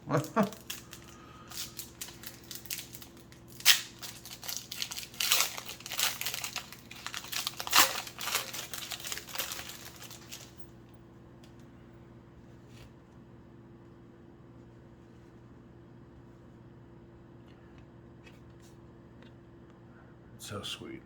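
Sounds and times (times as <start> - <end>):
card pack wrapper tearing and crinkling: 0.1 - 10.6.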